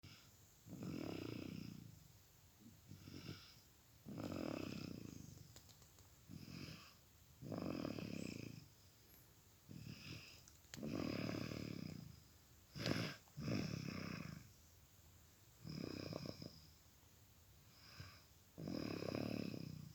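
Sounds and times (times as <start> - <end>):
child snoring: 0.0 - 1.9, 2.9 - 5.1, 6.3 - 8.7, 9.7 - 14.5, 15.6 - 16.5, 17.8 - 19.9.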